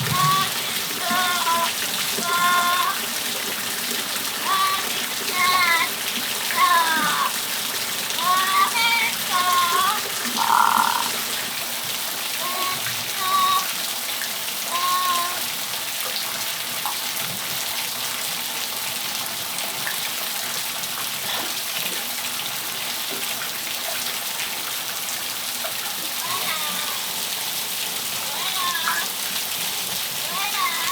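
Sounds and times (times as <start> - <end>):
steady rain falling: 0.0 - 30.9
parrot squawking and whistling: 10.4 - 11.2.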